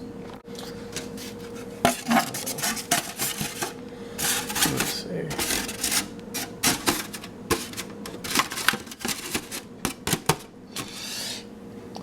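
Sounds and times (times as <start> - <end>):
scraping rub: 0.9 - 9.7, 10.7 - 11.5.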